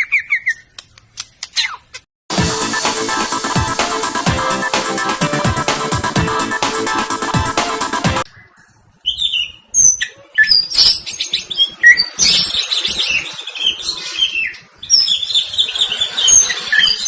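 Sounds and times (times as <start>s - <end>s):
songbird whistling song: 0.0s - 0.7s, 8.3s - 17.0s.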